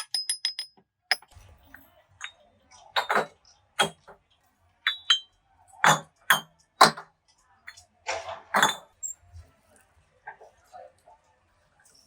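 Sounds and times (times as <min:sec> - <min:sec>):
metal clinking on metal: 0:00.0 - 0:01.3, 0:04.9 - 0:07.0.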